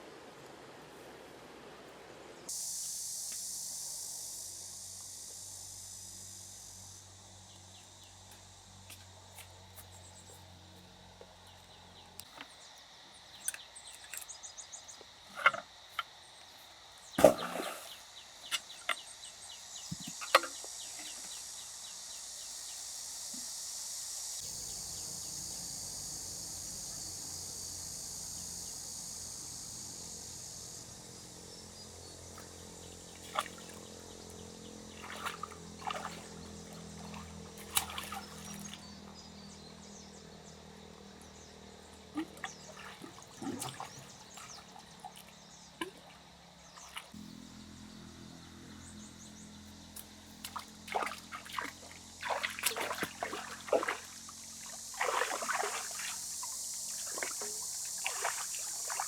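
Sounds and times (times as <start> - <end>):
insect drone: 0.0 - 59.0
water splashes: 17.2 - 18.1, 33.1 - 34.0, 34.9 - 39.1, 42.0 - 47.2, 50.4 - 59.0.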